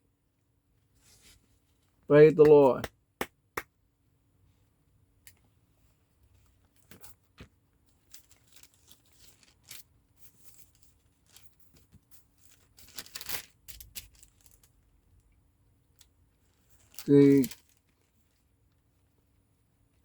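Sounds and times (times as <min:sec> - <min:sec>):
thin pages rustling: 0:08.2 - 0:14.7.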